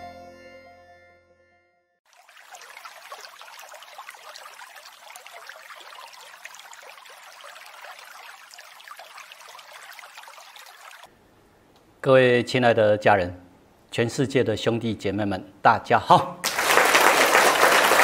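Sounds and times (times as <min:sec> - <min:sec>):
music: 0:00.0 - 0:02.0
water trickling: 0:02.1 - 0:11.1.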